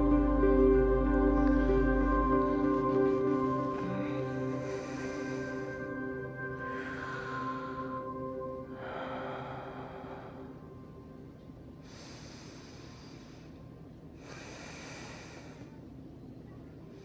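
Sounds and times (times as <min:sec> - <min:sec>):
low steady background hum: 0:00.0 - 0:17.0
person breathing in deep sleep: 0:02.3 - 0:10.8, 0:11.8 - 0:13.6, 0:14.2 - 0:15.8.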